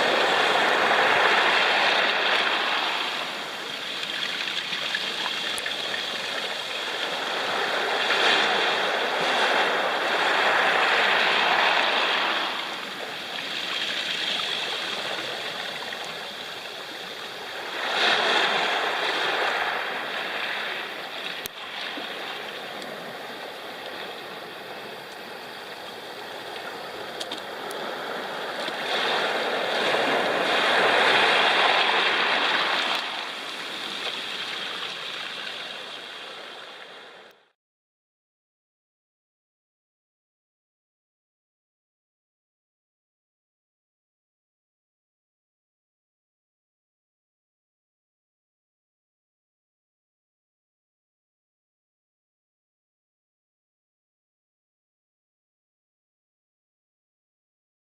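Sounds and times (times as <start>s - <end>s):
waves washing on pebble beach: 0.0s - 24.4s, 25.2s - 37.2s.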